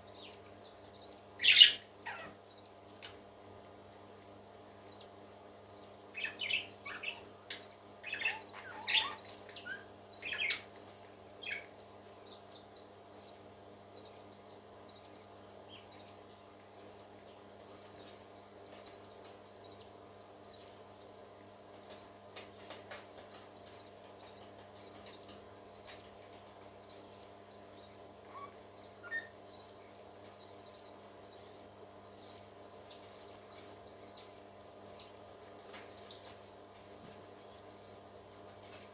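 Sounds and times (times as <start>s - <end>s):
parrot chick peeping chirps: 0.0s - 38.9s
steady low hum: 0.0s - 38.9s.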